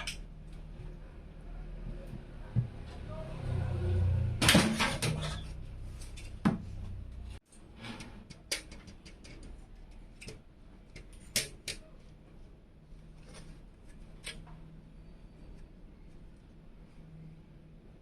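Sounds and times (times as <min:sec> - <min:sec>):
computer hardware clicks and knocks: 0:08.0 - 0:11.9.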